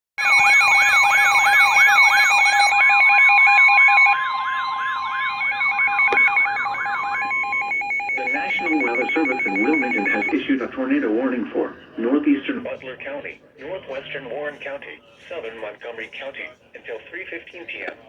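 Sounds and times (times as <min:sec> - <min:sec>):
siren sweep: 0:00.2 - 0:10.4
on-off beeping tones: 0:01.8 - 0:10.6
steady electronic tone: 0:04.1 - 0:10.4.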